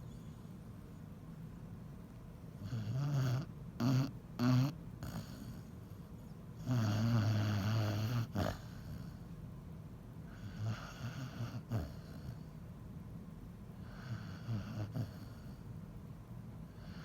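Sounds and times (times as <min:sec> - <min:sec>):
dog snoring: 0:00.0 - 0:00.6, 0:02.6 - 0:09.3, 0:10.3 - 0:12.6, 0:13.8 - 0:15.7, 0:16.7 - 0:17.0.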